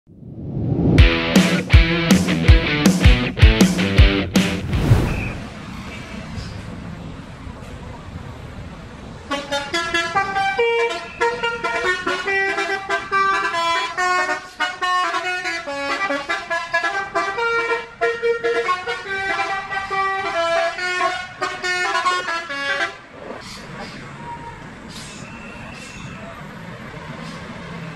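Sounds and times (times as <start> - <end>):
bus musical air horns: 9.2 - 24.1, 24.8 - 27.9.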